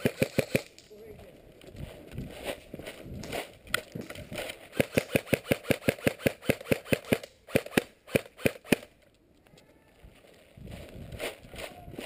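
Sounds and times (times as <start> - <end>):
airsoft gun shots: 0.0 - 0.7, 4.7 - 8.9.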